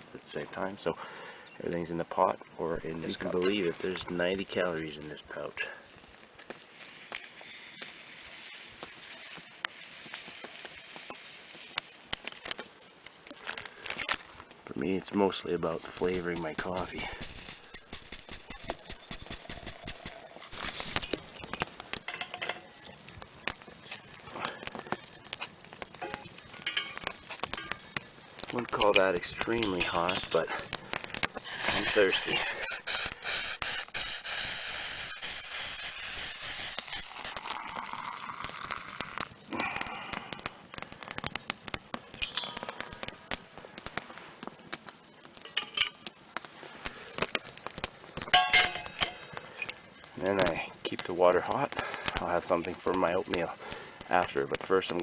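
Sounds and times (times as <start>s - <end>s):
campfire crackling and popping: 0.0s - 55.0s
clicks and taps of camp cookware: 21.4s - 22.7s, 26.0s - 31.4s, 39.2s - 43.0s, 45.4s - 46.2s, 48.2s - 49.8s.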